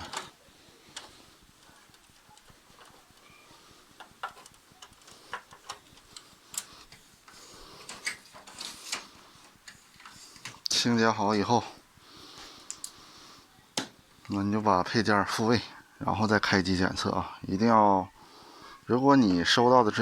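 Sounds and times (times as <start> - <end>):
plastic parts clicking: 4.0 - 10.7.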